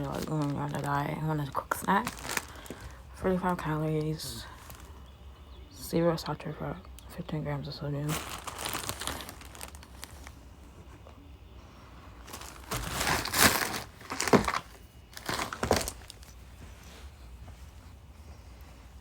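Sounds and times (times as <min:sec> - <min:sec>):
food packaging crinkling: 0:00.0 - 0:04.9, 0:08.1 - 0:10.5, 0:12.2 - 0:16.6.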